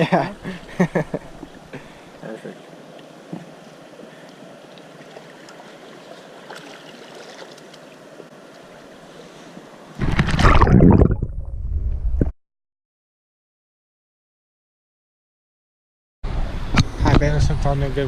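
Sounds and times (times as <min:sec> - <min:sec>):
river water rushing: 0:00.3 - 0:10.0.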